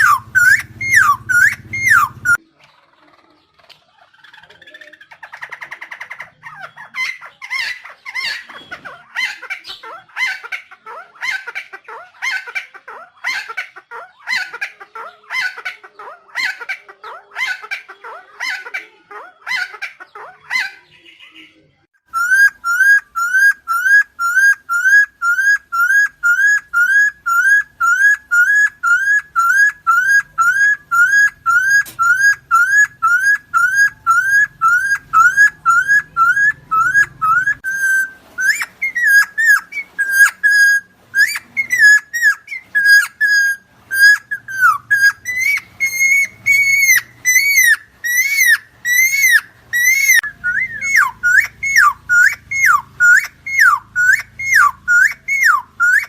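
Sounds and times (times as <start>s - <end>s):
rising whistled bird notes: 0.0s - 2.4s, 22.1s - 56.0s
friarbird harsh calls: 0.0s - 56.0s.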